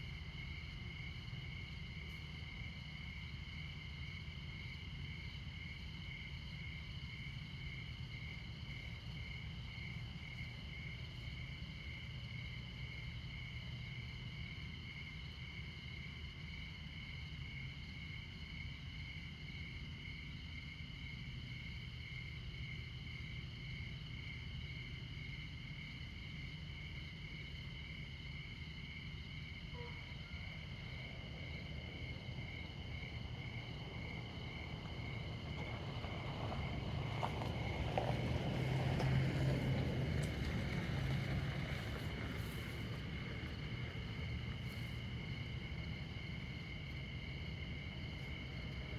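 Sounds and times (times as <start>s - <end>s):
crickets chirping: 0.0s - 48.9s
distant highway traffic rumble: 0.0s - 48.9s
vehicle approaching: 30.3s - 48.9s.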